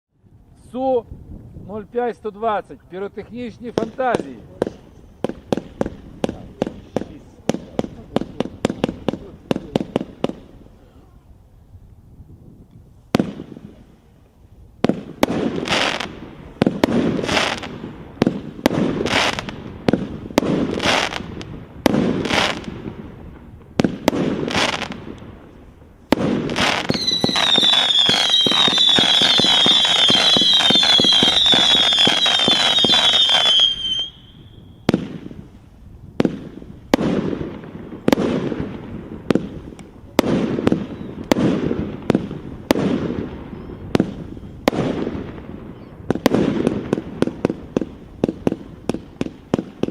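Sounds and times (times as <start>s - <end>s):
firework launches: 14.8s - 35.6s
high firework whistles: 15.2s - 22.7s, 26.1s - 35.5s, 40.2s - 41.6s.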